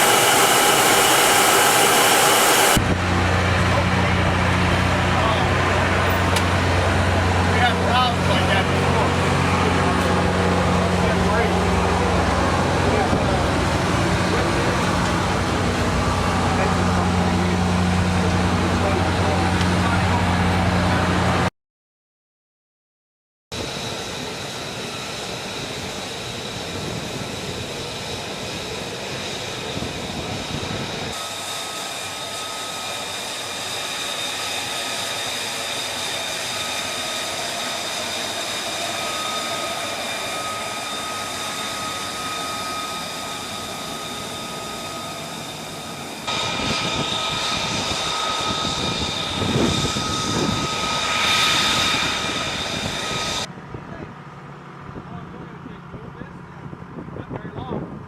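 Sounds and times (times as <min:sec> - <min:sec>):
jet engine whine: 0:00.0 - 0:21.5, 0:23.5 - 0:58.0.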